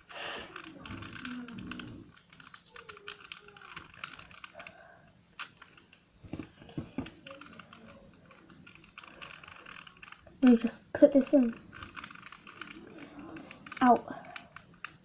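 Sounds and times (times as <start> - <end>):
sharp plastic clicks: 0.0 - 15.0.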